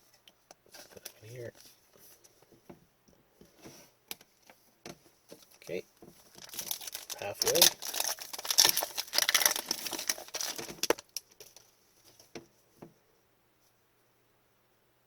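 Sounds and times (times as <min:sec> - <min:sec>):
plastic wrapper tearing and crinkling: 0:06.3 - 0:11.7.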